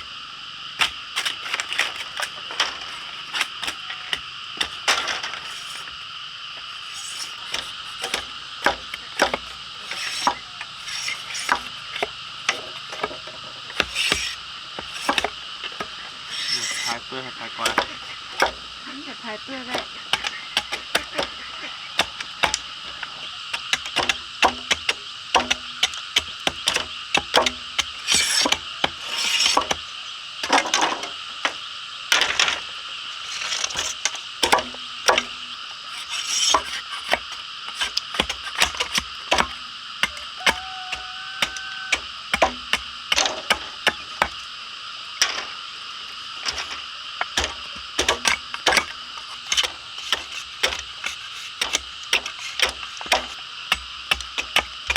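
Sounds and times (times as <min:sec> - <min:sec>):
knocking and tapping on bamboo: 0:23.5 - 0:29.8, 0:34.4 - 0:35.4, 0:36.5 - 0:44.4, 0:47.3 - 0:48.9.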